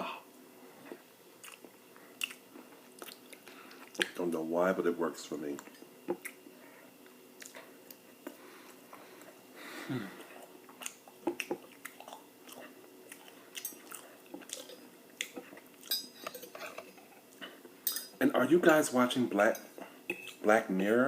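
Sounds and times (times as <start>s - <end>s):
chewing mouth sounds: 1.4s - 4.2s, 10.2s - 15.9s.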